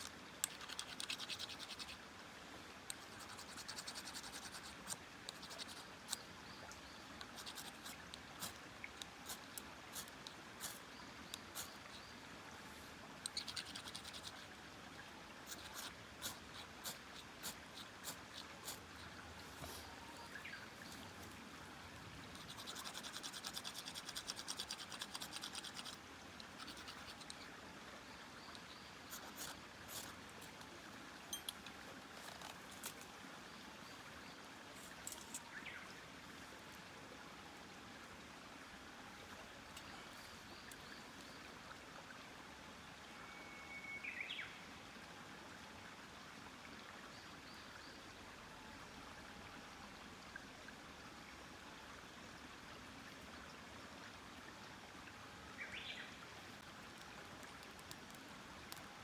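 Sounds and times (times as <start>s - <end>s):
sharp crackling clicks: 57.0s - 58.9s.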